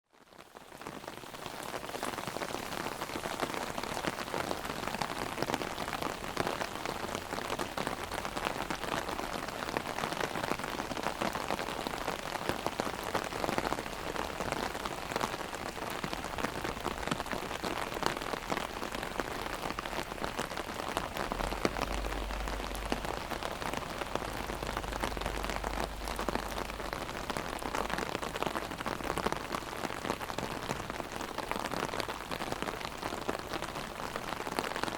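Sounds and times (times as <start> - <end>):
heavy rain on an umbrella: 0.0 - 34.9
low rumble: 20.9 - 28.4.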